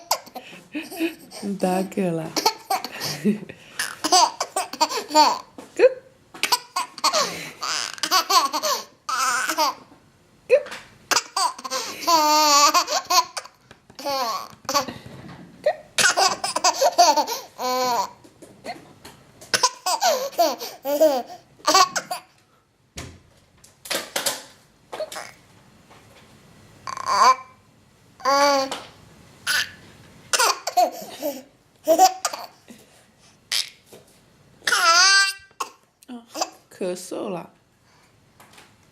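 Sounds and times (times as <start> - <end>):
baby laughing: 0.0 - 1.4, 2.4 - 3.2, 3.8 - 5.5, 6.4 - 9.9, 11.1 - 14.9, 15.6 - 18.2, 19.5 - 22.3, 26.9 - 27.5, 28.2 - 28.8, 29.5 - 32.6, 33.5 - 33.8, 34.6 - 35.8.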